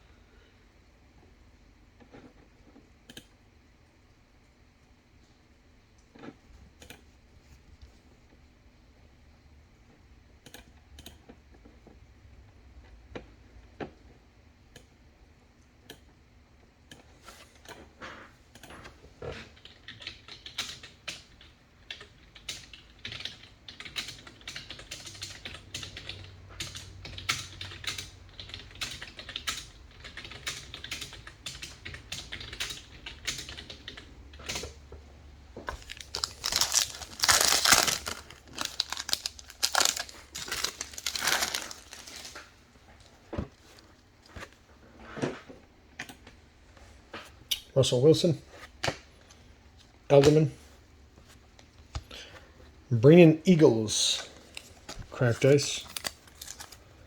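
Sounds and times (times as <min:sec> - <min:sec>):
trading cards clicking and tapping: 0:35.6 - 0:42.5
pack wrapper crinkling: 0:35.7 - 0:42.6, 0:54.5 - 0:56.8.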